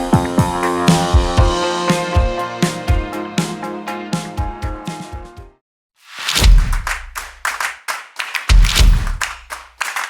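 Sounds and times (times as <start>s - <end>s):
drum hits: 6.4s - 7.4s, 8.5s - 9.5s.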